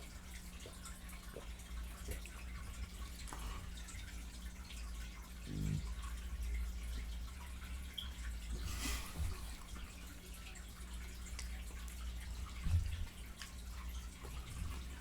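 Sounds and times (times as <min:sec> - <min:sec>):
low electrical hum: 0:00.0 - 0:15.0
wet chewing and smacking: 0:00.3 - 0:05.3, 0:11.0 - 0:15.0.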